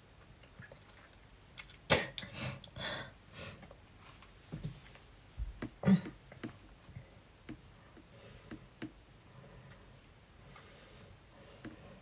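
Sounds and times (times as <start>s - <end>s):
woman coughing: 5.8s - 6.1s.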